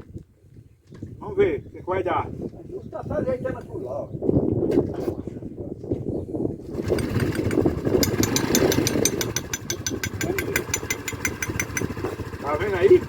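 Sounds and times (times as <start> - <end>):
fast metallic engine knocking: 6.7 - 13.0
motorcycle engine idling: 6.7 - 13.0.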